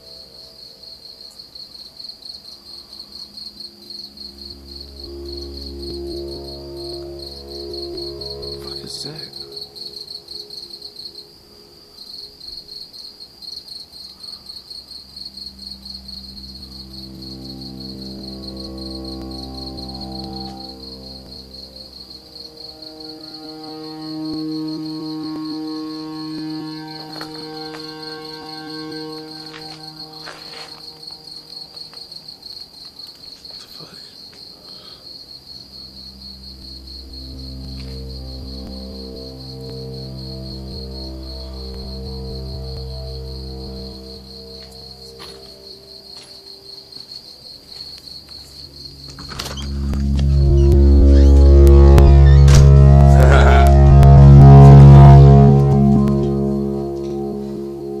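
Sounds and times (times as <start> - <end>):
crickets chirring: 0.0 - 58.0
low droning groan: 3.2 - 10.4, 15.5 - 31.5, 35.8 - 45.6, 49.2 - 58.0.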